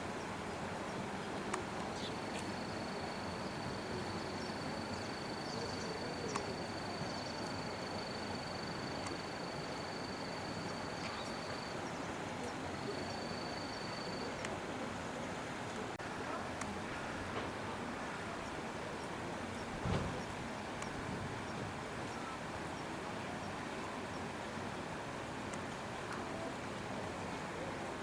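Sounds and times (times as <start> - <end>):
outdoor background hiss: 0.0 - 28.0
faint clicks: 6.2 - 6.6, 8.9 - 9.3.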